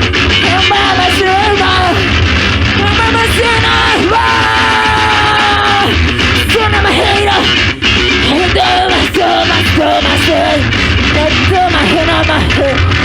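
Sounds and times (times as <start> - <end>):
loud band music: 0.0 - 13.0
person shouting vocals: 2.8 - 7.6.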